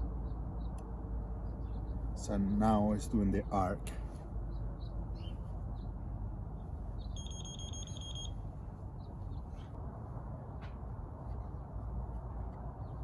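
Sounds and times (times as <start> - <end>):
low background rumble: 0.0 - 13.0
high electronic beeps: 7.2 - 8.3.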